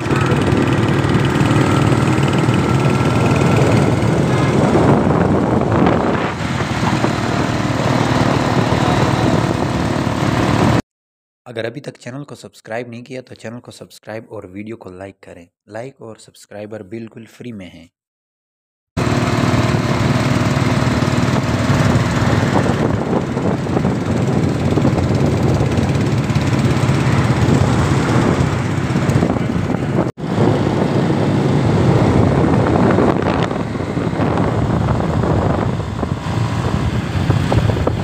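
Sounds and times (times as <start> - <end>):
car engine running: 0.0 - 10.8, 19.0 - 38.0.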